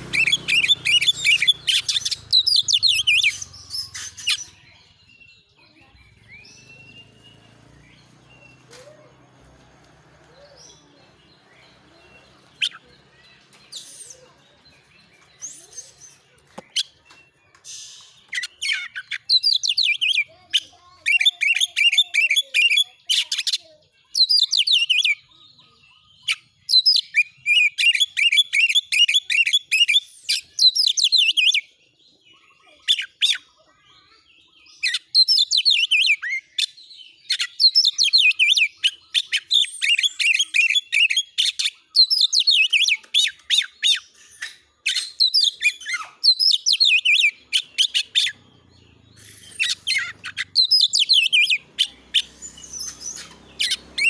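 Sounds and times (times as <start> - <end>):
songbird singing rapid high notes: 0.0 - 17.0, 37.6 - 54.0.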